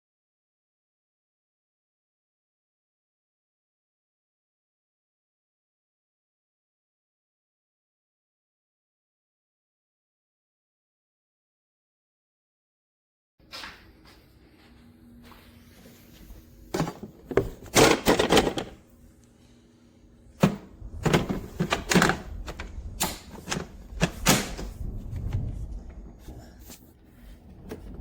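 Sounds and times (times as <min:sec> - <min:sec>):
hard parts clunking and clicking: 0:16.7 - 0:18.8, 0:20.4 - 0:24.8.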